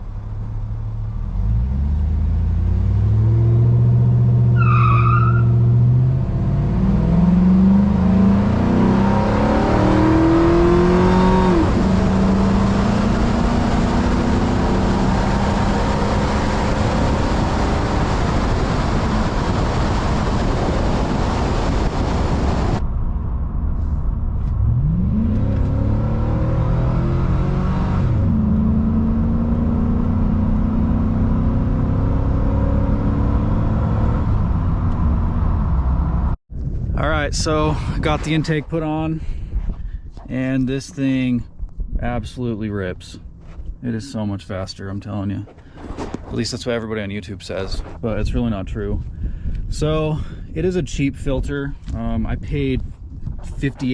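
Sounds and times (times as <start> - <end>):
car engine accelerating hard: 0.3 - 36.4.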